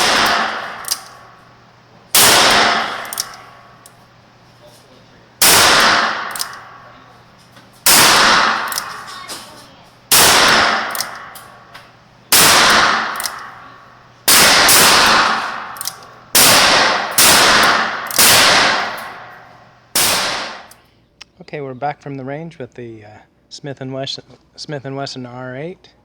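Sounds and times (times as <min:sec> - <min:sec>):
revolver gunshots echoing: 0:00.0 - 0:01.4, 0:02.1 - 0:03.8, 0:05.4 - 0:07.0, 0:07.8 - 0:09.2, 0:10.1 - 0:11.7, 0:12.3 - 0:20.7.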